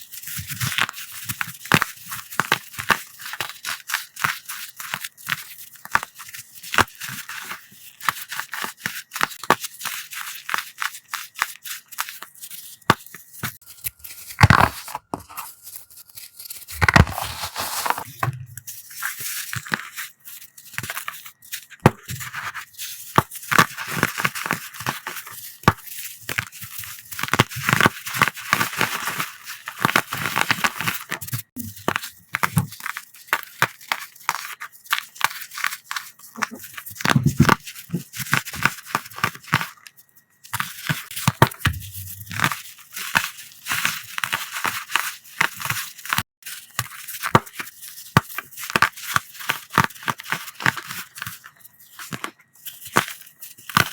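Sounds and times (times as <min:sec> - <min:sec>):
chalk blocks crunching: 0:13.5 - 0:21.2.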